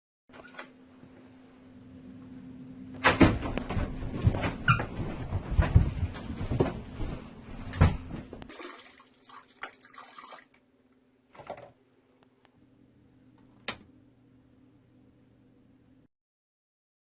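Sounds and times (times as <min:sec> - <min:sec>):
water running and splashing: 0:08.5 - 0:10.6.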